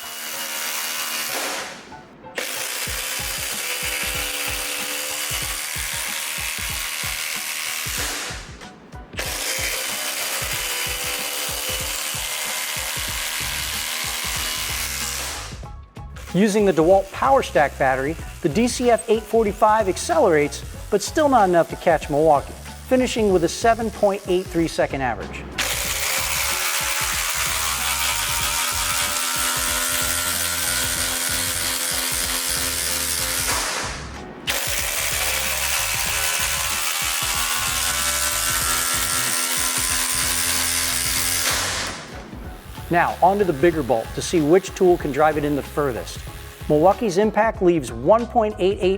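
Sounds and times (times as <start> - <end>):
impact driver hammering: 0.0 - 15.6, 25.5 - 47.2.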